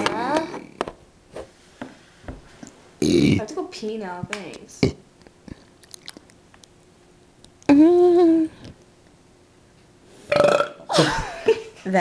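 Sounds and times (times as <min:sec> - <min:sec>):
person's voiced sound: 0:03.0 - 0:03.7.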